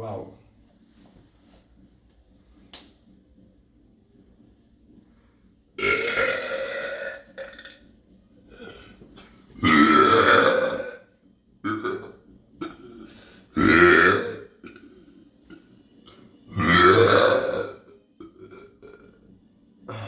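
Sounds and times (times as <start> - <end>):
person burping: 5.8 - 7.8, 9.6 - 11.0, 11.6 - 15.1, 16.5 - 19.2.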